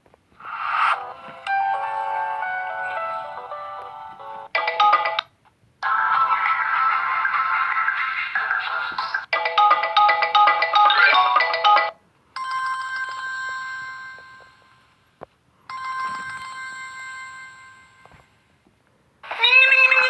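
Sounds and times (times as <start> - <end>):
phone ringtone melody: 0.5 - 5.2, 9.4 - 14.8, 15.7 - 18.2
phone chime tone: 0.8 - 3.6, 15.7 - 18.2.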